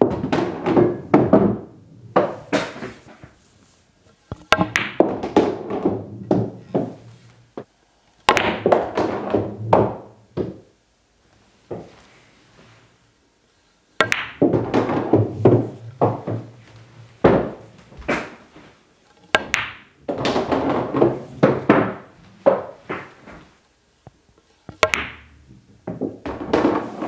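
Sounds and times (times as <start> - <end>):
pool ball rolling and knocking: 0.0 - 7.7, 8.3 - 10.7, 11.6 - 12.0, 14.0 - 23.6, 24.7 - 27.0
cue striking ball click: 4.3 - 6.9, 14.0 - 16.5, 19.3 - 23.2, 24.7 - 25.4.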